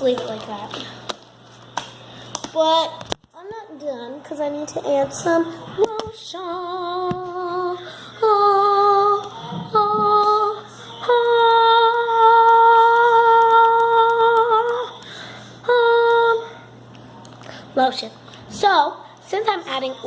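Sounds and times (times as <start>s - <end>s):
girl singing with vibrato: 5.0s - 15.0s, 15.6s - 16.7s.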